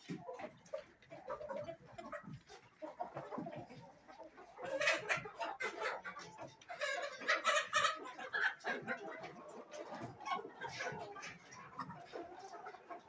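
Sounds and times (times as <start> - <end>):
chickens clucking: 0.0 - 13.0
chickens squawking: 4.6 - 12.9.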